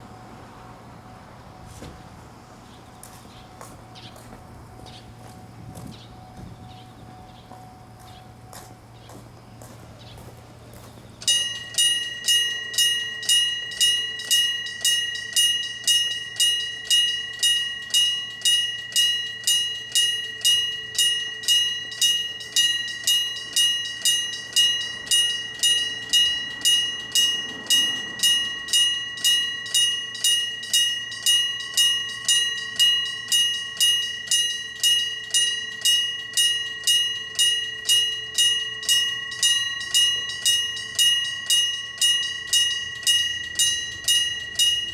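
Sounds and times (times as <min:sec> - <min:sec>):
level crossing bell ringing: 0:02.6 - 0:44.9.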